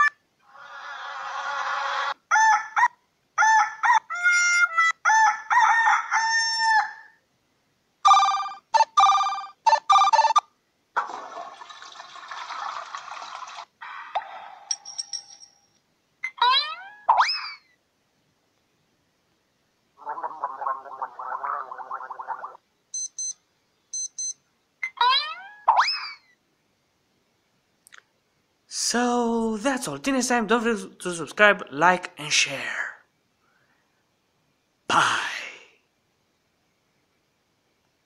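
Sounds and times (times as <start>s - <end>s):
pitched animal calls: 0.0s - 2.8s, 20.0s - 22.6s, 24.8s - 26.4s.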